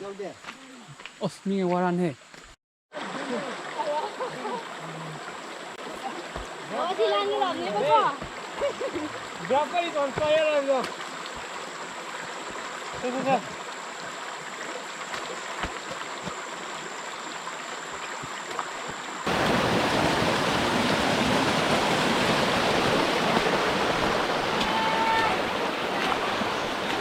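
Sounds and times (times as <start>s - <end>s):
waterfall rushing: 19.2s - 27.0s.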